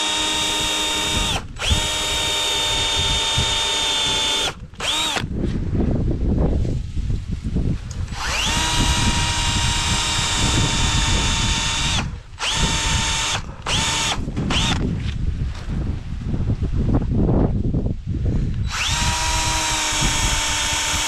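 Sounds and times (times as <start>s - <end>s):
power drill whining: 0.0s - 5.3s, 8.0s - 14.9s, 18.5s - 21.0s.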